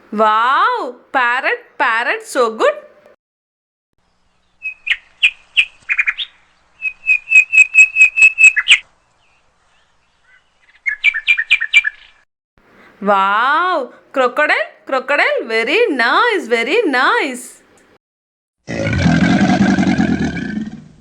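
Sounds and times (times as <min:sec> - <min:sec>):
bird chirping: 0:04.0 - 0:12.2.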